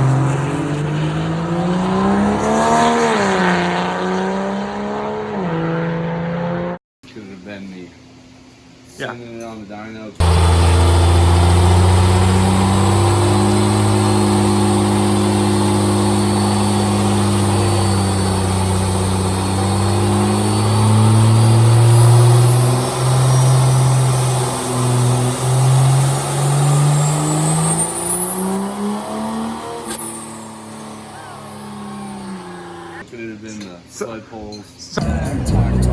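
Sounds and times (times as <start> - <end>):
diesel engine at full throttle: 0.0 - 6.8, 10.2 - 33.0, 35.0 - 35.9
high turbo whistle: 10.2 - 33.0.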